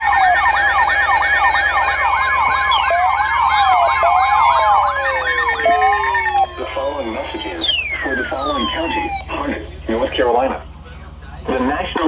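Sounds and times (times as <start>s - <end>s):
electronic siren yelp: 0.0s - 9.3s
siren wail: 0.0s - 9.3s.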